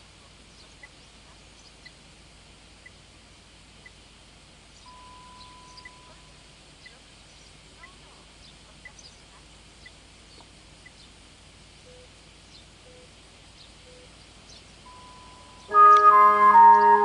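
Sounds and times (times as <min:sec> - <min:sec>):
faint chirps: 0:04.8 - 0:11.2
loudspeaker organ-like chime melody: 0:14.9 - 0:17.0.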